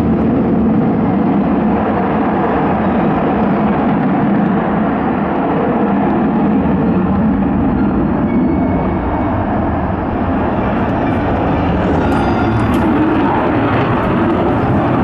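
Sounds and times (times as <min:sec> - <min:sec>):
jet engine roar: 0:00.0 - 0:15.0.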